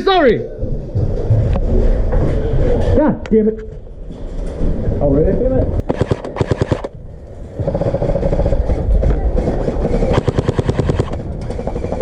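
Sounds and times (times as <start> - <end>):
airsoft rifle full-auto burst: 5.9 - 6.9, 7.6 - 8.8, 9.4 - 12.0
mechanical buzzing rattle: 5.9 - 6.9, 7.6 - 12.0.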